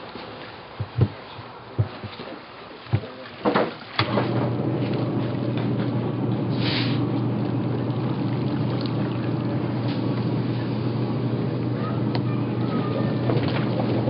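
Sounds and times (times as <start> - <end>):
water splashing and trickling: 0.0 - 14.0
machine humming: 4.1 - 14.0
short hiss: 6.5 - 7.0.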